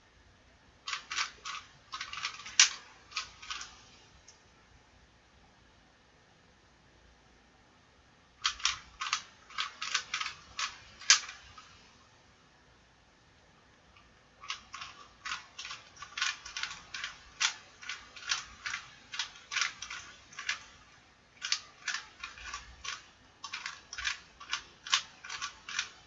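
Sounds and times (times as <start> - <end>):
puzzle cube clicking: 0.9 - 3.7, 8.4 - 11.6, 14.4 - 26.0.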